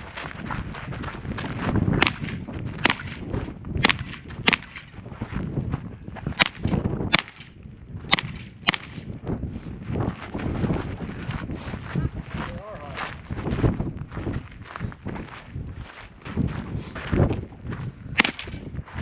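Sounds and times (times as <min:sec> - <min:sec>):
pistol shots: 0:02.0 - 0:05.0, 0:06.4 - 0:09.1, 0:18.2 - 0:18.7.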